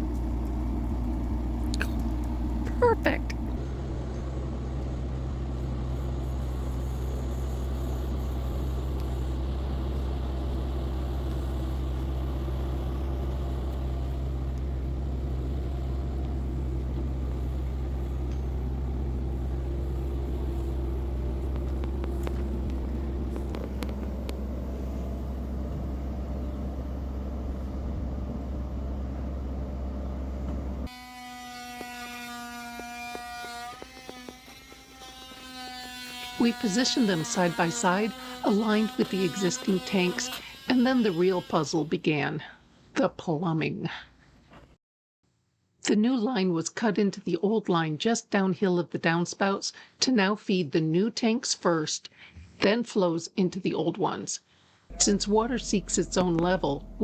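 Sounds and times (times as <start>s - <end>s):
diesel engine rumbling: 0.0s - 30.9s, 54.9s - 57.0s.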